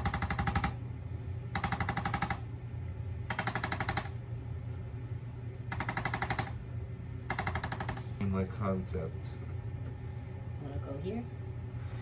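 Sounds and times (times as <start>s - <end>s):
rapid rattling taps: 0.0s - 0.8s, 1.6s - 2.4s, 3.3s - 4.2s, 5.7s - 6.6s, 7.3s - 8.2s
steady low hum: 0.0s - 12.0s.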